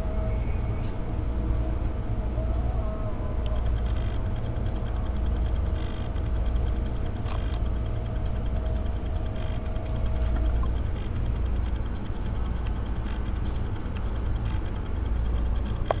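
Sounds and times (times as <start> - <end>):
low steady hum: 0.0 - 16.0
thin steady tone: 0.0 - 16.0
fast faint ticking: 3.5 - 16.0.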